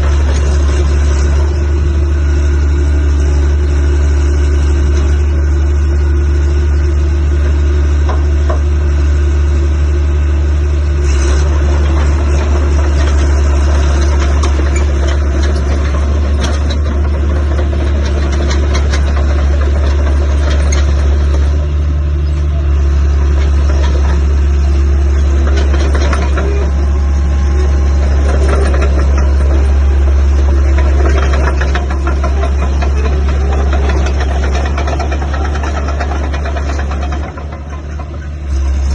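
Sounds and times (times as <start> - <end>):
bulldozer diesel engine running: 0.0 - 38.9
machine rattling: 25.1 - 38.8.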